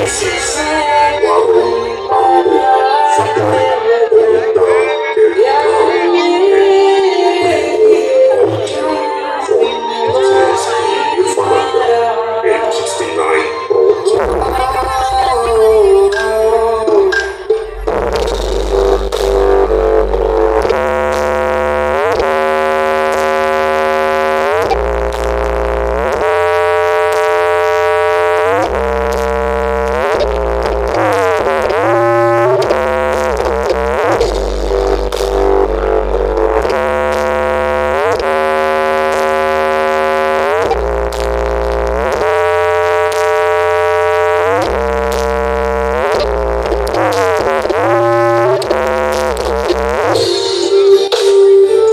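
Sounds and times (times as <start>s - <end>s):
loud electronic music: 0.0s - 51.9s
synthesizer chords: 0.0s - 51.9s
deep bass note: 14.2s - 50.3s.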